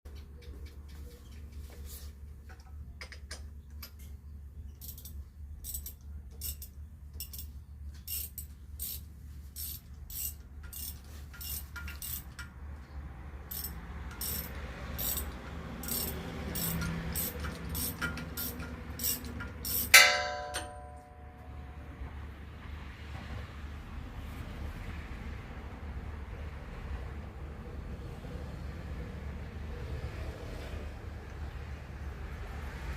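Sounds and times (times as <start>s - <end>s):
sharp metallic clicks and taps: 2.4s - 4.2s, 9.7s - 21.5s
low steady hum: 19.4s - 22.6s
loud metal clang: 19.8s - 21.8s.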